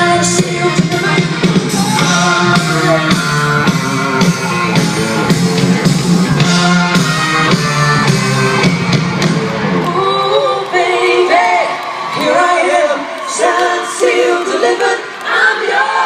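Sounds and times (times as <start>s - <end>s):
drum kit beat: 0.0s - 9.7s.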